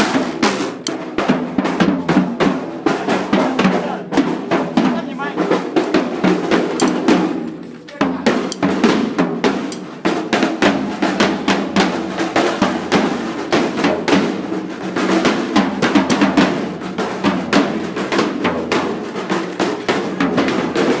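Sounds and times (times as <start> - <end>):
drums beaten fast: 0.0 - 21.0.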